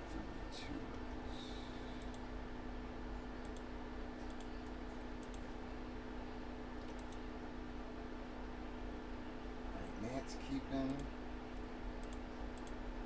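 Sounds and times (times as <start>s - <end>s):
low electrical hum: 0.0s - 13.0s
faint scattered clicks: 3.4s - 5.5s, 6.8s - 7.2s, 10.8s - 12.8s.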